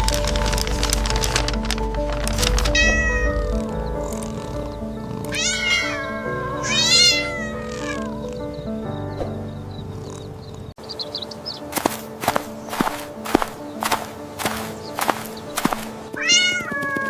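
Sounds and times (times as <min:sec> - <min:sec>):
background music: 0:00.0 - 0:17.0
cat meowing: 0:02.7 - 0:03.6, 0:05.3 - 0:08.5, 0:16.2 - 0:17.0.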